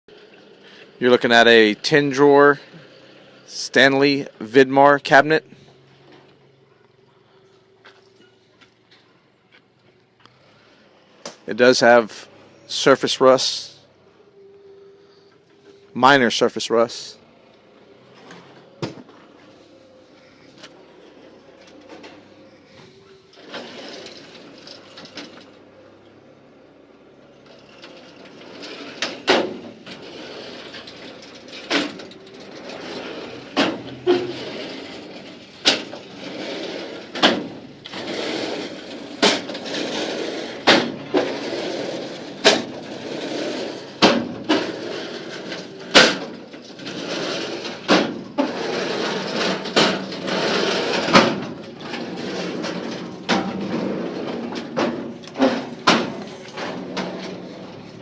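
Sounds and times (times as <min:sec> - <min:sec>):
metal drawers sliding on runners: 0:18.0 - 0:58.0
metal drawer clacking shut: 0:27.5 - 0:58.0.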